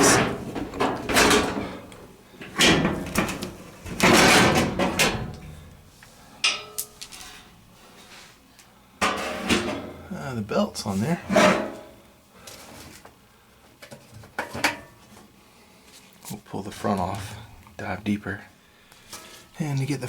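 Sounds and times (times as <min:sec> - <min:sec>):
sheet metal scraping and sliding: 0:00.0 - 0:05.8, 0:11.2 - 0:12.0.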